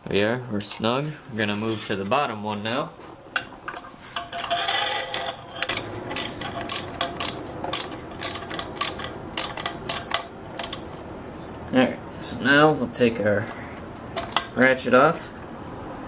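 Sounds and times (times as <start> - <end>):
metal tools clinking: 3.4 - 11.0
ratchet clicking: 5.6 - 10.9.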